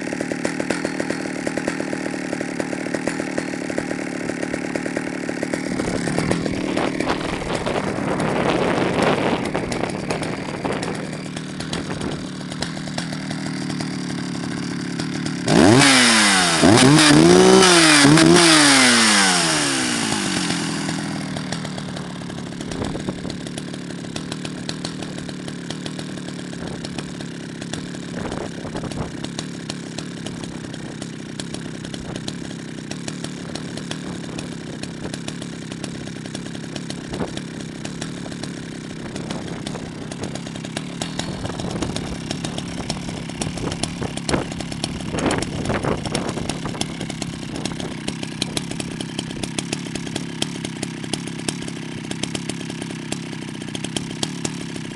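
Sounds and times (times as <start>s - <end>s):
chainsaw engine idling: 0.0s - 54.9s.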